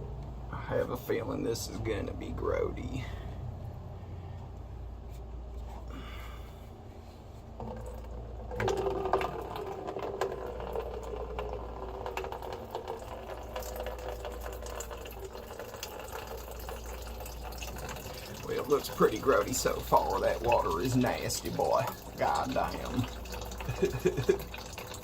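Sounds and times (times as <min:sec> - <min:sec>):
plastic cap rattling: 0:07.6 - 0:14.6
water pouring into bucket: 0:07.6 - 0:25.0.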